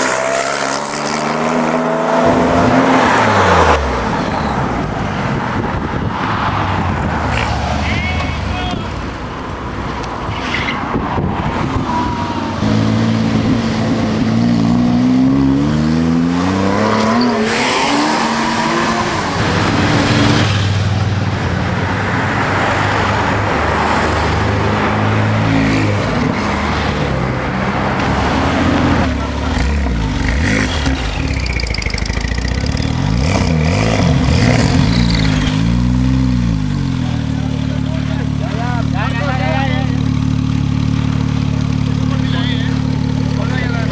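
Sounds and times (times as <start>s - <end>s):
car engine revving: 12.0s - 21.2s, 22.3s - 43.9s.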